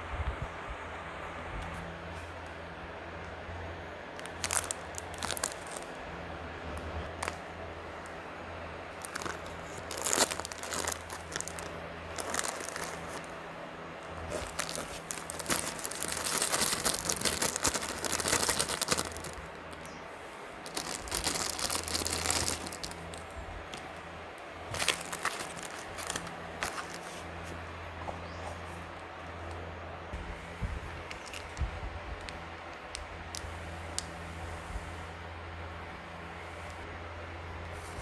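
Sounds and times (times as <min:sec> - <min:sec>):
low electrical hum: 0:00.0 - 0:38.0
plastic packaging crinkling: 0:04.1 - 0:06.2, 0:06.8 - 0:20.0, 0:20.6 - 0:27.6, 0:30.9 - 0:34.1.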